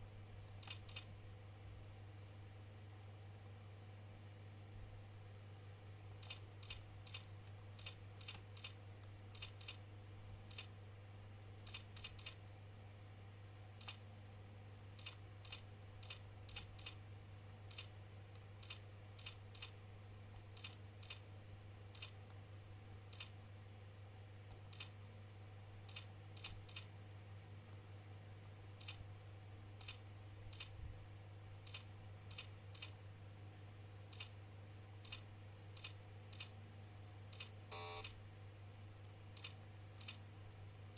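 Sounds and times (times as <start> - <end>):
steady low hum: 0.0 - 40.9
computer keys clicking: 0.4 - 1.1, 6.2 - 9.8, 10.5 - 10.7, 11.6 - 12.4, 13.8 - 14.0, 15.0 - 17.0, 17.7 - 21.2, 21.9 - 22.2, 23.1 - 23.4, 24.5 - 25.0, 25.9 - 26.9, 28.8 - 29.0, 29.8 - 30.7, 31.6 - 33.0, 34.1 - 34.4, 35.0 - 35.2, 35.8 - 36.5, 37.3 - 38.2, 39.4 - 40.2.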